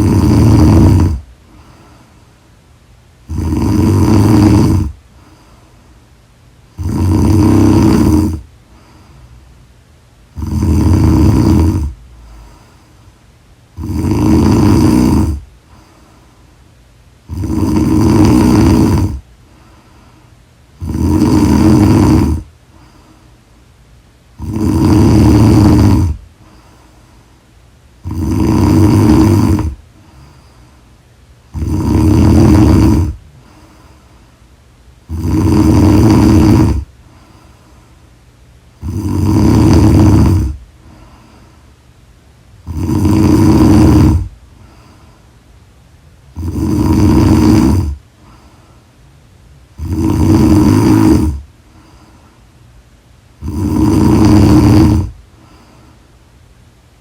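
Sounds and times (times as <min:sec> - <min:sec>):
woman snoring: 0:00.0 - 0:01.3, 0:03.2 - 0:05.0, 0:06.7 - 0:08.5, 0:10.3 - 0:12.7, 0:13.8 - 0:15.5, 0:17.2 - 0:19.3, 0:20.8 - 0:22.5, 0:24.4 - 0:26.3, 0:28.0 - 0:30.4, 0:31.5 - 0:33.3, 0:35.0 - 0:36.9, 0:38.8 - 0:41.2, 0:42.6 - 0:44.4, 0:46.3 - 0:48.4, 0:49.7 - 0:51.5, 0:53.4 - 0:55.6.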